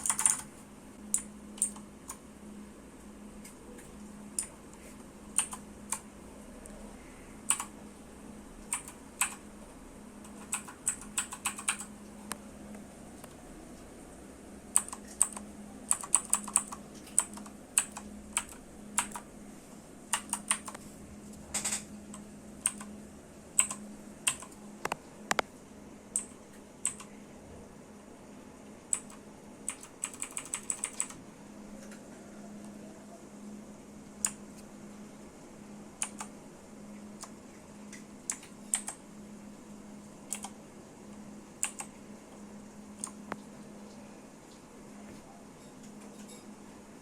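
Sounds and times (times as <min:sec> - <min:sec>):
clicky mechanical keyboard typing: 0:00.0 - 0:00.5, 0:01.1 - 0:02.2, 0:05.3 - 0:06.1, 0:07.4 - 0:07.8, 0:08.6 - 0:09.5, 0:10.2 - 0:12.4, 0:14.7 - 0:19.3, 0:20.1 - 0:20.8, 0:21.6 - 0:22.9, 0:23.6 - 0:25.5, 0:26.1 - 0:27.1, 0:28.9 - 0:31.2, 0:36.0 - 0:36.4, 0:38.2 - 0:39.0, 0:40.3 - 0:40.6, 0:41.6 - 0:42.0, 0:43.0 - 0:43.4.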